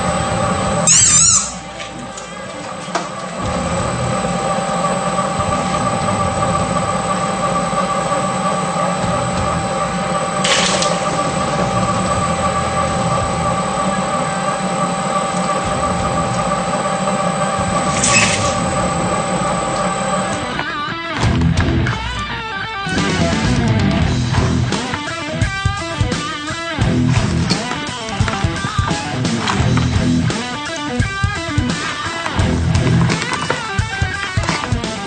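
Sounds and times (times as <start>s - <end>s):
shredder motor whining: 0.0s - 23.6s.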